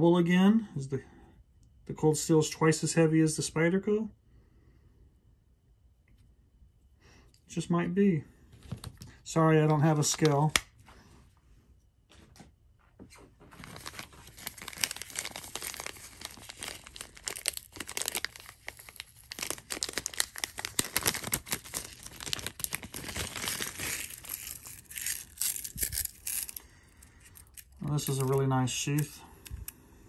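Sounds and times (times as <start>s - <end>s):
packaging crinkling and tearing: 13.5s - 29.7s.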